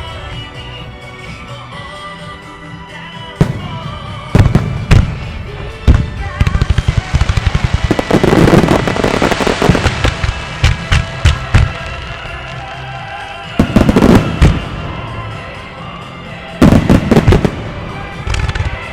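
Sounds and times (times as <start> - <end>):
music over loudspeakers: 0.0 - 18.9
fireworks booming: 3.4 - 12.5, 13.6 - 15.1, 16.6 - 18.8
fireworks crackling: 3.4 - 15.6, 16.5 - 18.9.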